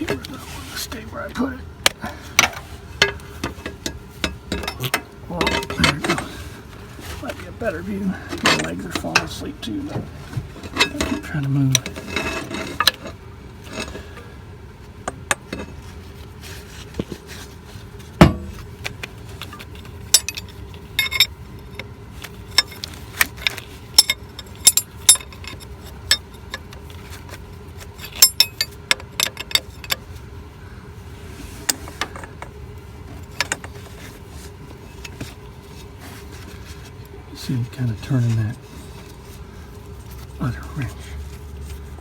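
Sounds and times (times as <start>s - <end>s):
faint steady hum: 0.0s - 42.0s
metal wrenches clinking on fittings: 2.4s - 6.3s, 8.3s - 9.4s, 19.4s - 21.9s, 22.5s - 26.7s, 28.0s - 30.0s.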